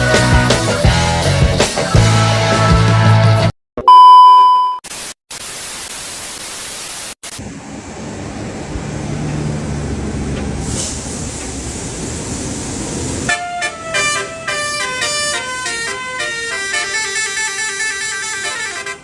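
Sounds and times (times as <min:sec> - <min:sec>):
rock music: 0:00.0 - 0:03.5
loud steady beep tone: 0:03.9 - 0:04.8
static-like hiss: 0:04.9 - 0:07.4
low engine hum: 0:07.3 - 0:15.3.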